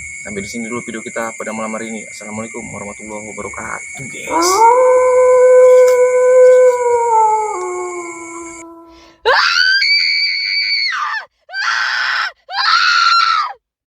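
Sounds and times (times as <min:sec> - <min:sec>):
high-pitched screams: 0:04.0 - 0:13.6
long howl: 0:04.0 - 0:13.6.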